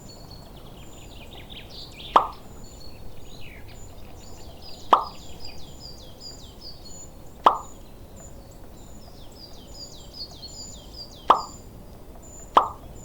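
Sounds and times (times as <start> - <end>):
high bird chirps: 0.1 - 13.0
sharp knocks: 7.5 - 7.8, 12.6 - 12.8.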